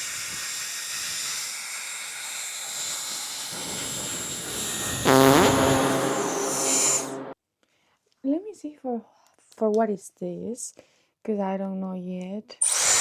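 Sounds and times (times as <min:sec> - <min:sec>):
hair dryer blowing air: 0:02.0 - 0:07.3
loud pitched sound: 0:03.6 - 0:07.4.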